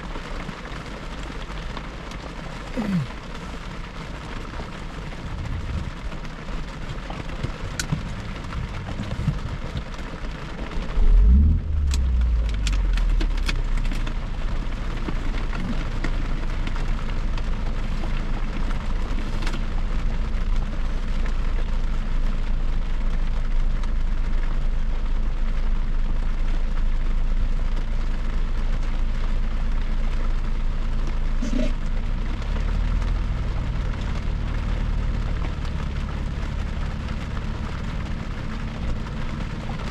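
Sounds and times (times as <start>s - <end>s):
road and tyre noise in car: 0.0s - 39.9s
low rumble: 5.1s - 19.2s.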